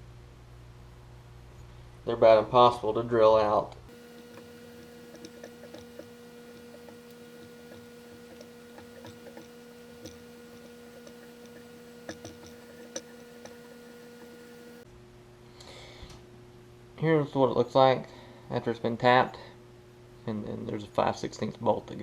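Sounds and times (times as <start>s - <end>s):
steady hum: 3.9s - 14.9s.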